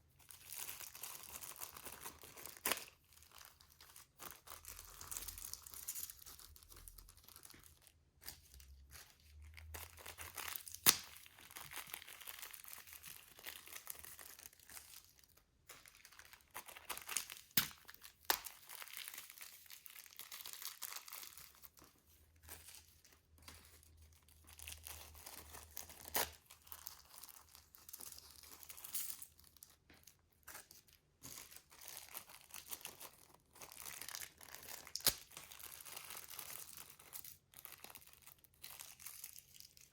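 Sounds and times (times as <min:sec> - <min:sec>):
slime in plastic bags crinkling: 0:00.0 - 0:39.9.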